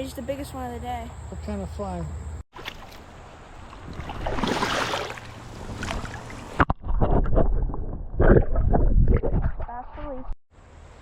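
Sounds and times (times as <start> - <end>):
river water rushing and splashing: 2.6 - 6.6.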